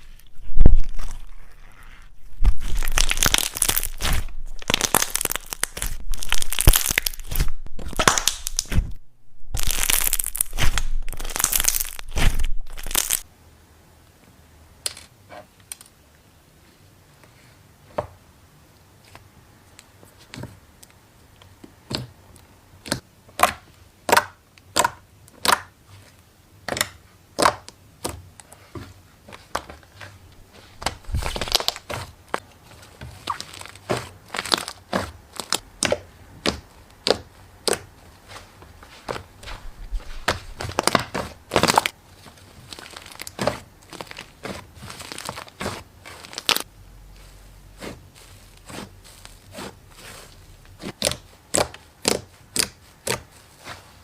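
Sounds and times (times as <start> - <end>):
slime crackling and popping: 2.4 - 13.3, 30.8 - 32.4, 33.1 - 37.9, 39.6 - 46.7, 47.8 - 53.2.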